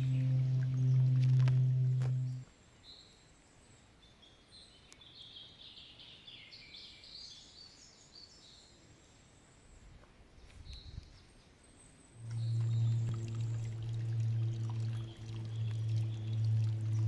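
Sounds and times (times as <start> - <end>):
faint distant songbirds twittering: 0.0 - 17.0.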